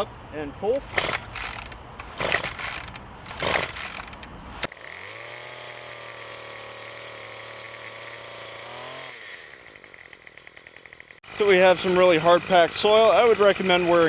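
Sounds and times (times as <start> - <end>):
recoil starter pulled with rasping zip: 0.8 - 14.0
two-stroke engine idling: 9.7 - 14.0.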